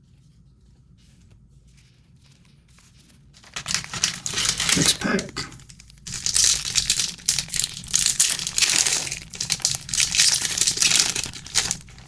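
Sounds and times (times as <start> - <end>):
plastic wrapper crinkling: 3.4 - 12.0.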